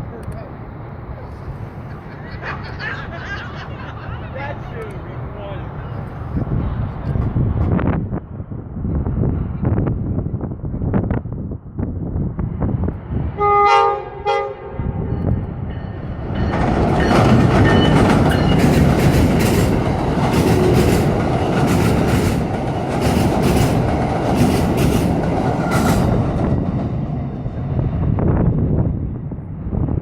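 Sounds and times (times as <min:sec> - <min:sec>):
train passing at speed: 0:00.0 - 0:30.0
train horn blasts: 0:13.4 - 0:15.1
wheels clacking over rail joints: 0:16.2 - 0:27.1.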